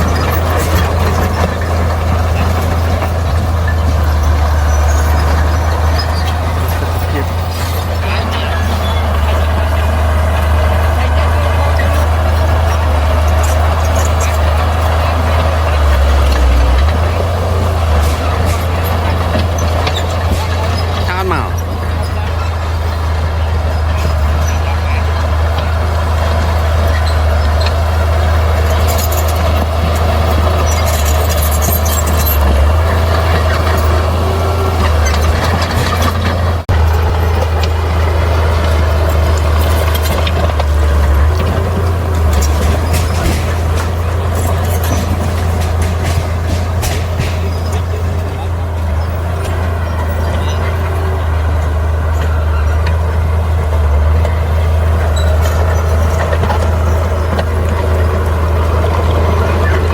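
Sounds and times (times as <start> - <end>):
bulldozer diesel engine droning: 0.0 - 59.9
metal clanks and rattles: 0.0 - 59.9.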